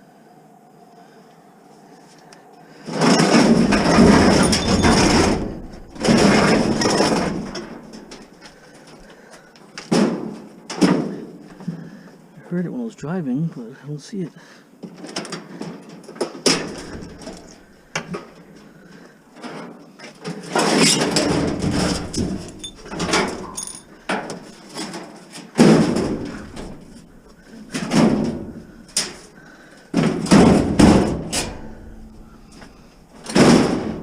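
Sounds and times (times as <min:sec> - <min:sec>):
doors or lids shutting: 0:02.9 - 0:08.4, 0:20.6 - 0:34.0
heavy knocks and clatters: 0:02.9 - 0:11.9, 0:15.0 - 0:34.0.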